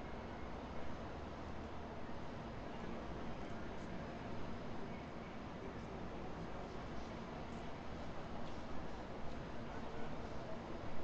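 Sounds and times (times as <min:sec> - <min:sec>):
city ambience rumble and hiss: 0:00.0 - 0:11.0.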